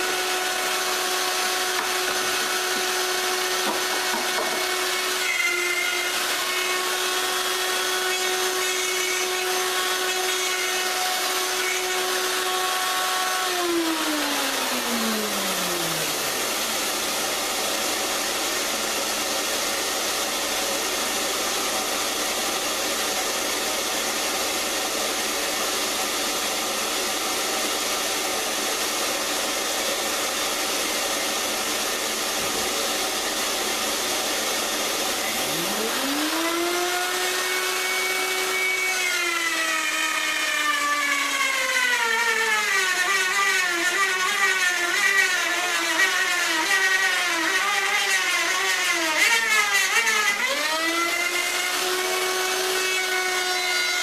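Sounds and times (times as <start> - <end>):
woodworking router whine: 0.0 - 54.0.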